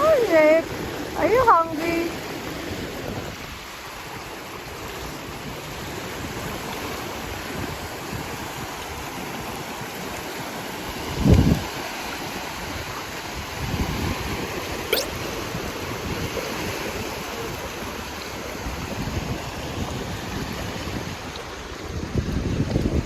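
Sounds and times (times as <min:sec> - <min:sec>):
waves washing on beach: 0:00.0 - 0:23.0
wind buffeting microphone: 0:17.1 - 0:23.0.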